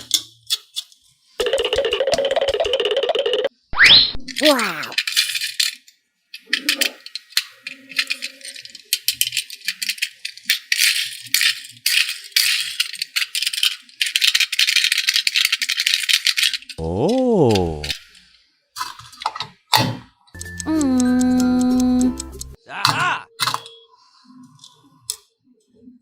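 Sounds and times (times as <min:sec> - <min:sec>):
person exclaiming oh: 0:04.4 - 0:05.0, 0:16.8 - 0:18.0, 0:20.7 - 0:23.3.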